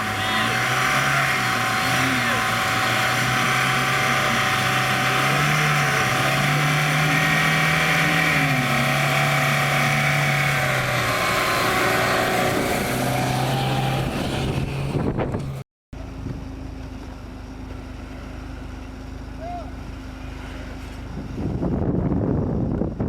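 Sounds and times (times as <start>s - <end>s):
off-road vehicle engine revving: 0.0s - 16.2s
steady engine hum: 0.0s - 23.0s.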